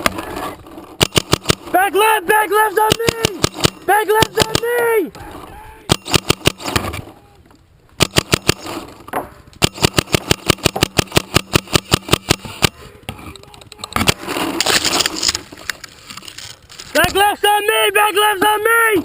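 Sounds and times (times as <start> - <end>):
paintball marker firing: 1.0 - 1.7, 2.9 - 4.7, 5.9 - 7.0, 8.0 - 8.8, 9.6 - 12.8.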